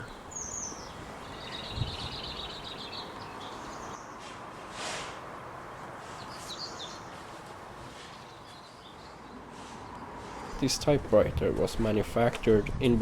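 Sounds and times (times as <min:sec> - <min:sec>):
small birds chirping: 0:00.0 - 0:04.2, 0:05.7 - 0:10.1
outdoor background hiss: 0:00.0 - 0:13.0.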